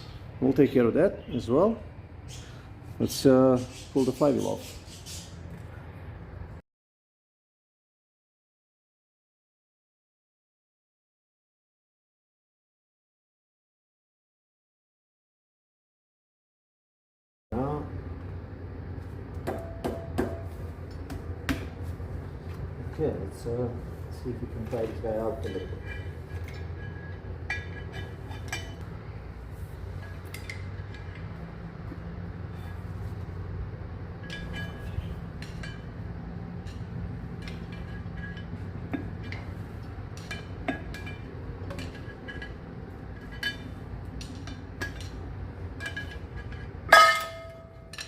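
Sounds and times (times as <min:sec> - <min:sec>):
steady low hum: 0:17.5 - 0:48.0
hand tools clinking on metal parts: 0:24.7 - 0:28.8, 0:34.2 - 0:35.9, 0:36.6 - 0:48.0
loud metal clank: 0:46.9 - 0:48.0.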